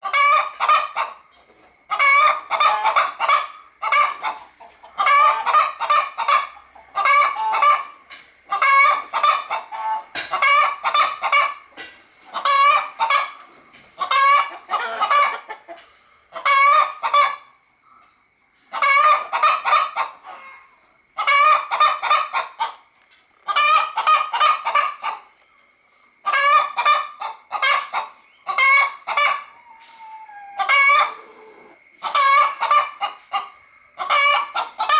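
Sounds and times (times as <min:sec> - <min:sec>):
hen clucking: 0:00.0 - 0:17.6, 0:18.7 - 0:25.4, 0:26.2 - 0:34.9.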